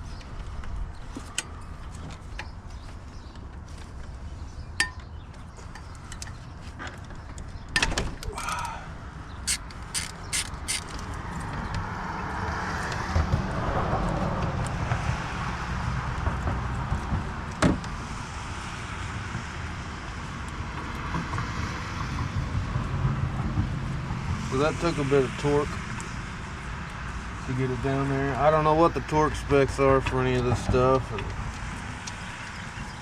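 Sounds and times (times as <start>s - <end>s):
metal hand tools clacking: 9.5s - 11.0s.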